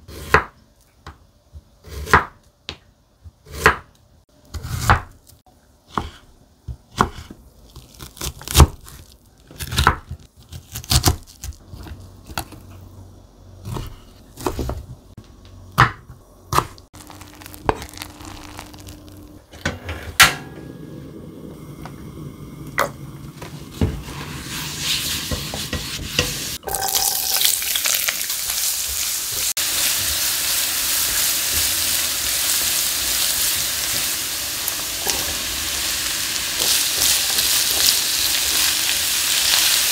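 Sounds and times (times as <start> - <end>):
food sizzling in frying pan: 17.0 - 19.4, 24.1 - 39.9.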